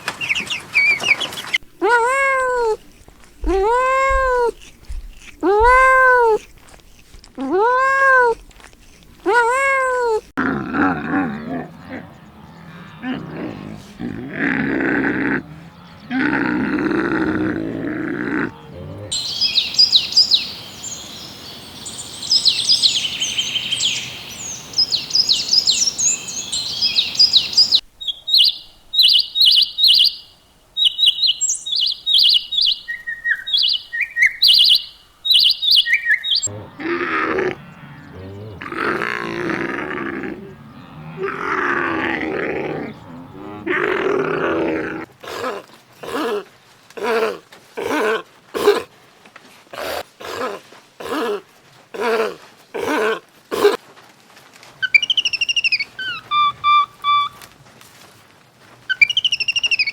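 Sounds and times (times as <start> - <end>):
small birds chirping: 0.0 - 10.4, 18.4 - 36.8, 54.8 - 57.5, 58.9 - 59.9
animal grunting calls: 1.6 - 19.3, 36.2 - 49.0, 49.7 - 53.8
large animal bellowing: 1.7 - 19.2, 36.4 - 48.9.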